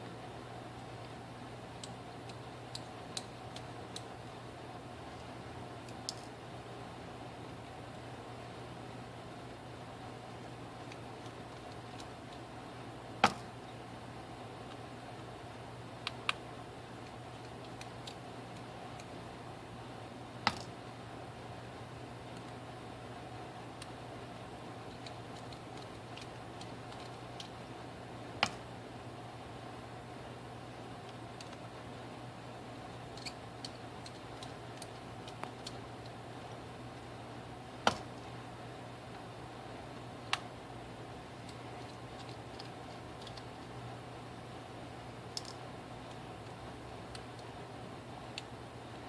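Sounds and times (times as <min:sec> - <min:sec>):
steady low hum: 0:00.0 - 0:49.0
small tools clicking on phone parts: 0:01.0 - 0:04.1, 0:05.8 - 0:06.3, 0:10.8 - 0:12.4, 0:17.0 - 0:19.1, 0:24.9 - 0:27.6, 0:31.0 - 0:31.7, 0:33.0 - 0:36.2, 0:41.4 - 0:43.8, 0:45.3 - 0:47.6
repair tools clicking on phone parts: 0:17.0 - 0:19.1, 0:41.5 - 0:43.5, 0:45.3 - 0:47.5.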